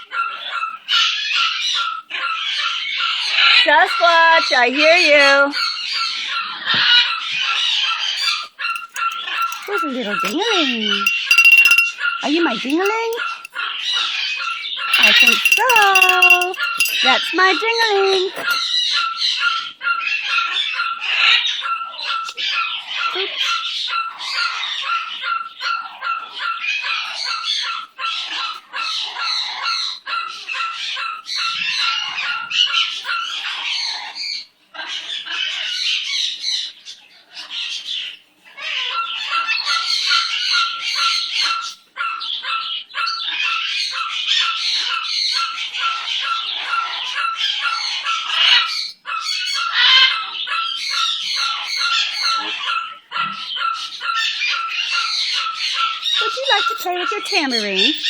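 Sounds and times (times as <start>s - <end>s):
pet's small bell jingling: 8.7s - 12.0s, 12.6s - 13.5s, 15.0s - 17.8s, 56.2s - 58.0s.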